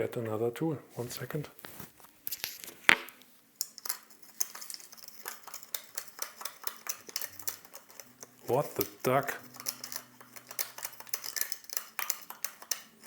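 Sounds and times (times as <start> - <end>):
metal tools clicking and clattering: 3.6 - 13.0.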